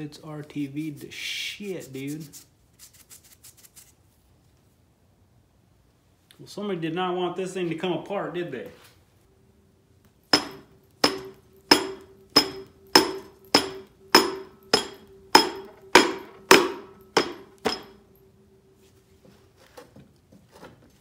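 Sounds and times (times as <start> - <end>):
hammer blows on metal: 10.3 - 18.1.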